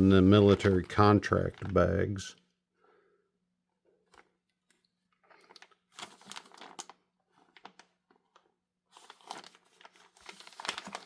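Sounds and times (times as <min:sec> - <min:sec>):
plastic bag crinkling: 0:05.2 - 0:11.0.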